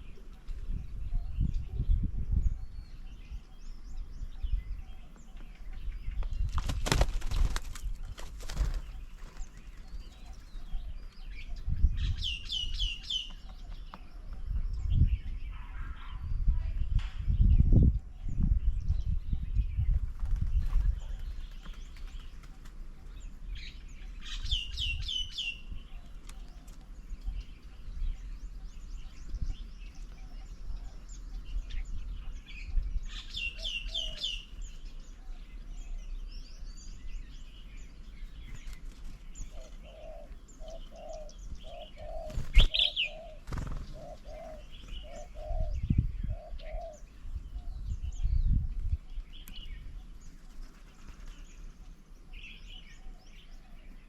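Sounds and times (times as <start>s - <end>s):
bird low hooting notes: 0.0s - 6.4s, 8.5s - 54.0s.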